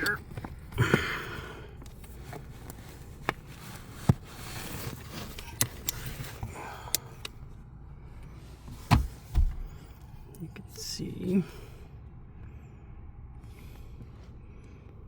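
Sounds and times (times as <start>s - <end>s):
low steady hum: 0.0s - 15.0s
heavy thumps: 8.8s - 9.8s.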